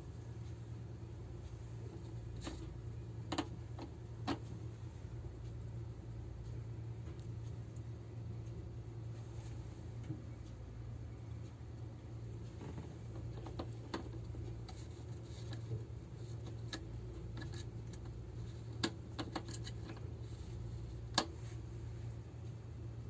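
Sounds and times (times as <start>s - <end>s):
light clicks and taps: 1.4s - 4.7s, 6.4s - 8.6s, 9.4s - 21.6s.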